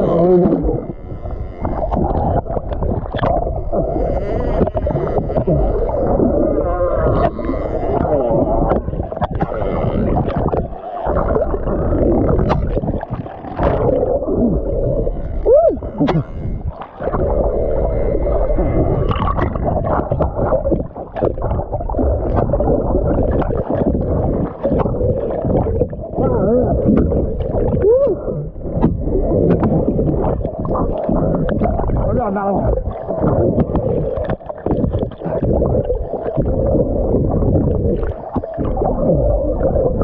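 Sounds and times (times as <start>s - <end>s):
water sloshing against kayak: 0.0s - 40.0s.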